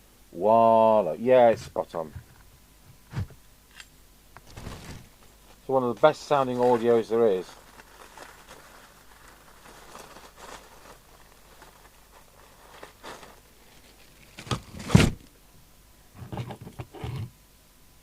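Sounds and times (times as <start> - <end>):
dull thuds: 4.4 - 6.1, 14.4 - 15.3.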